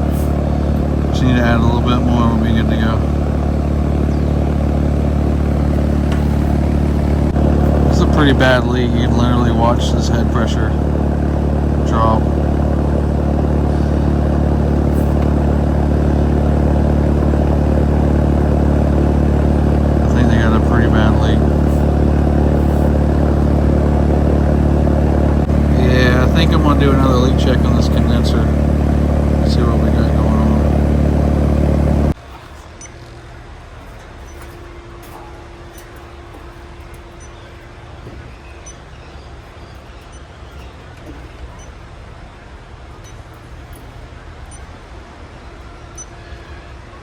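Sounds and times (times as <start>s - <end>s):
air conditioner unit humming: 0.0s - 47.0s
faint low hum: 0.0s - 47.0s.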